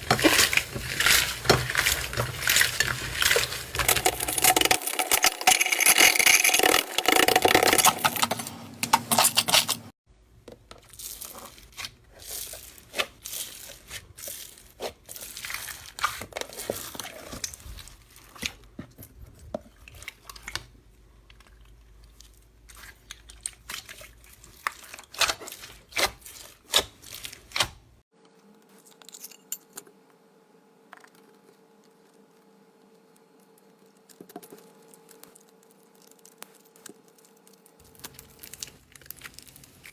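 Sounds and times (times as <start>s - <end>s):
hands squeezing slime: 10.9s - 18.6s, 34.6s - 39.9s
slime crackling and popping: 34.8s - 39.9s.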